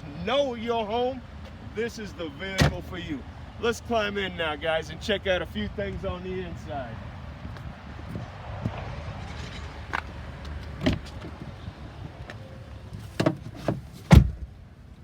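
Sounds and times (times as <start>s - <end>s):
car door shutting: 2.6s - 2.9s, 10.6s - 11.5s, 12.2s - 14.5s
knocks of climbing into car: 12.3s - 14.5s.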